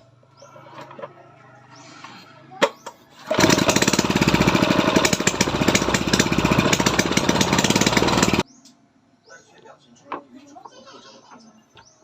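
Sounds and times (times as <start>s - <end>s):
small engine running: 1.7s - 8.4s.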